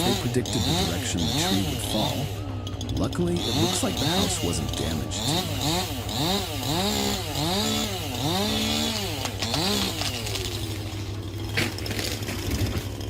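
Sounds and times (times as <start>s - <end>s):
chainsaw revving: 0.0s - 13.0s.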